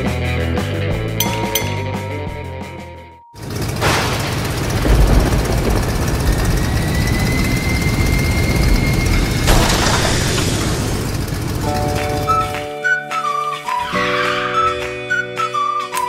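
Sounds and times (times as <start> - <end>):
vehicle engine rumble with whine: 3.4 - 12.7.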